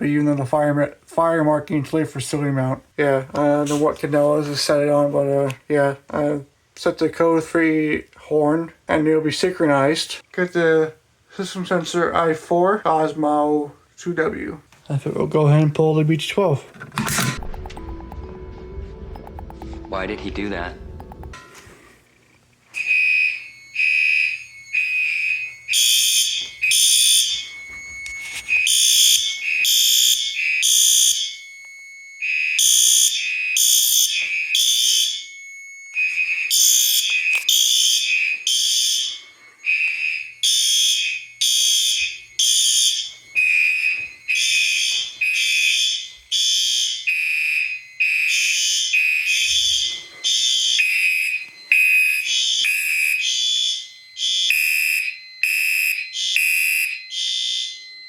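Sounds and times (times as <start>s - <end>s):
fire alarm horns beeping: 22.7s - 58.0s.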